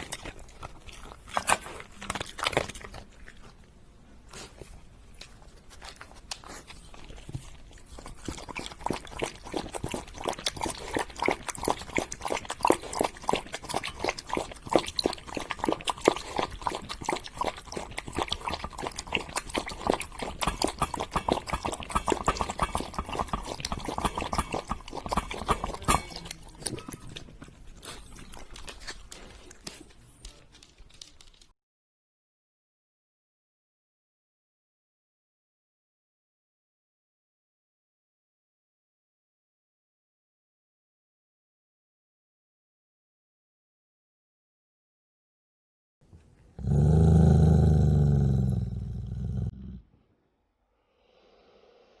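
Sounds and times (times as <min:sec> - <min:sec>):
wet smacking eating sounds: 0:04.4 - 0:29.9.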